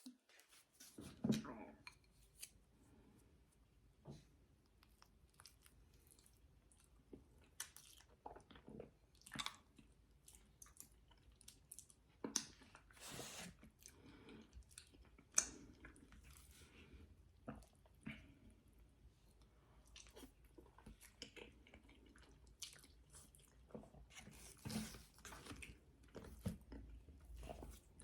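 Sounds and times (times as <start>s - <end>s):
chewing and mouth smacks: 4.6s - 16.5s, 17.4s - 18.5s, 19.4s - 28.0s.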